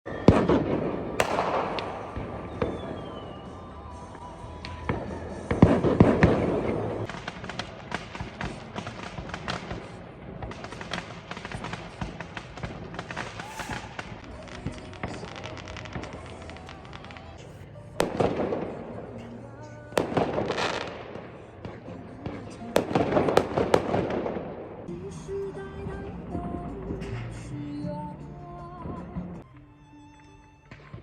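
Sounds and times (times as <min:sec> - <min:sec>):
firecracker cracks: 0:00.1 - 0:24.9
fireworks bangs: 0:00.1 - 0:24.9.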